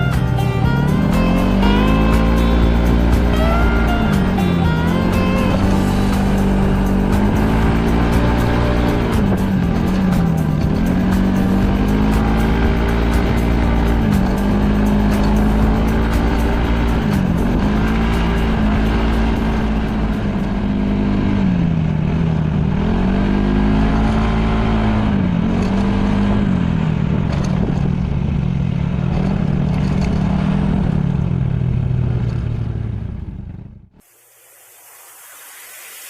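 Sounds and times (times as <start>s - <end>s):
scooter engine running: 0.0s - 34.0s
wind rumble on microphone: 24.6s - 32.5s.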